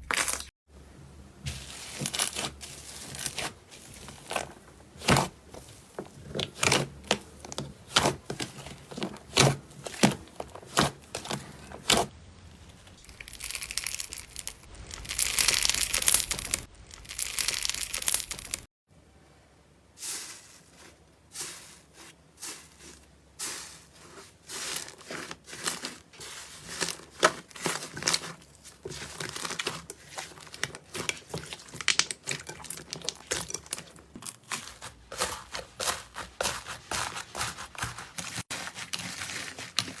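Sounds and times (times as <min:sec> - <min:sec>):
slime clicking and crackling: 0:13.0 - 0:18.6, 0:27.2 - 0:36.6.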